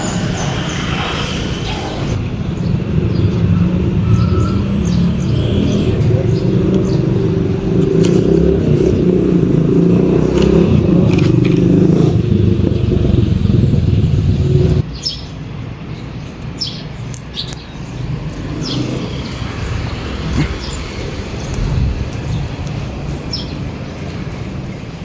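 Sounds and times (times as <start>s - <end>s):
vehicle engine running: 6.0s - 14.8s, 16.3s - 25.0s
bird chirps: 16.1s - 25.0s.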